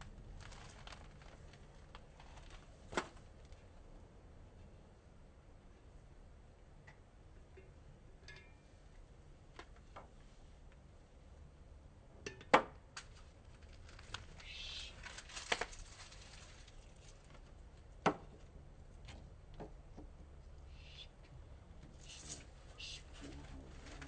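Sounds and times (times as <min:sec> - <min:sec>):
short rustle: 0:13.5 - 0:17.4.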